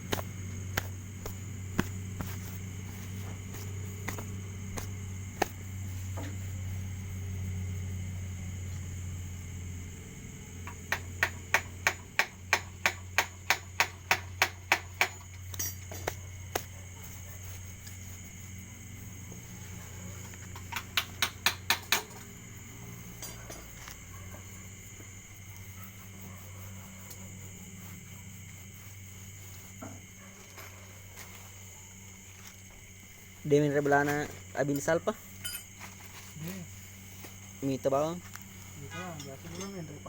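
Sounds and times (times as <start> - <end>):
insect chirring: 0.0 - 40.0
sharp knocks: 10.6 - 15.2.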